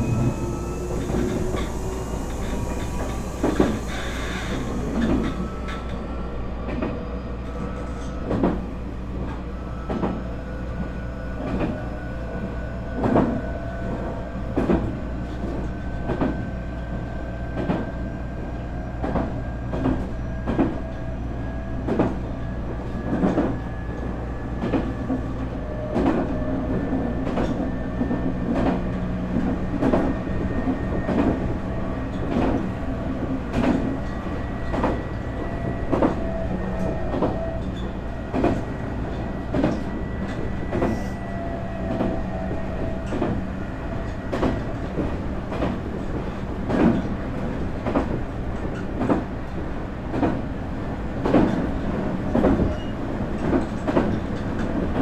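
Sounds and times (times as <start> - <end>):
train motor whine rising: 0.0 - 6.0.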